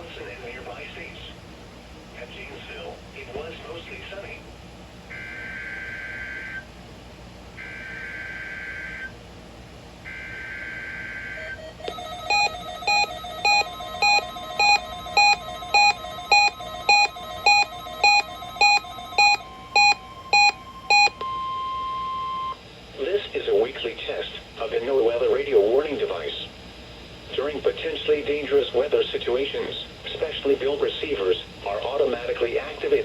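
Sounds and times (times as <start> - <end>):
rapid electronic alert beeps: 11.8 - 22.6
screeching digital data bursts: 11.9 - 21.1.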